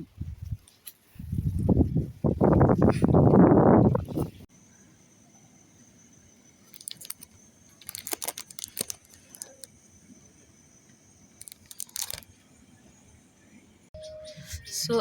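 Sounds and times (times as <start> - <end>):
dry vegetation crackling: 6.7 - 9.7, 11.4 - 12.3.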